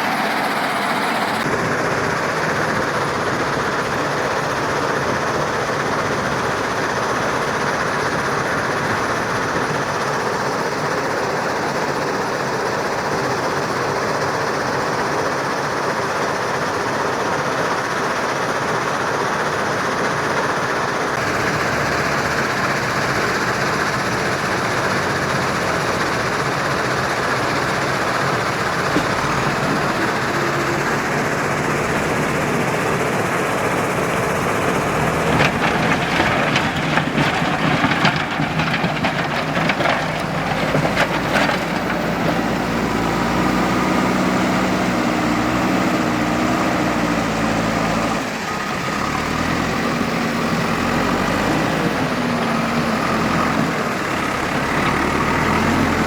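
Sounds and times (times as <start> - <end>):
heavy machinery rumbling: 19.9 - 56.0.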